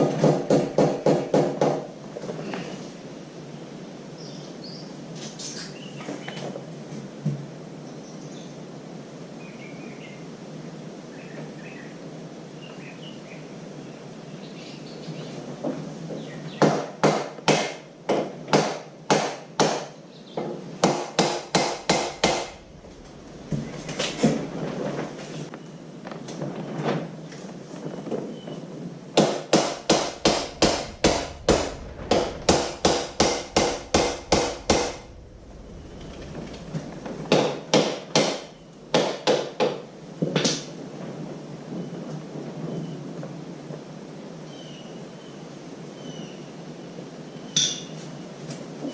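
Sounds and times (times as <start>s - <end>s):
hammer striking metal: 20.8s - 22.6s, 29.2s - 35.1s.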